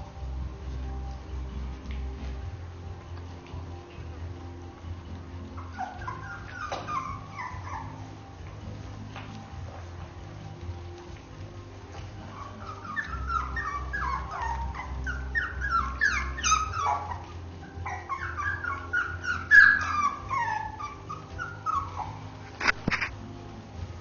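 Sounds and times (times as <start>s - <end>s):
puppies whimpering and yipping: 5.1s - 23.2s.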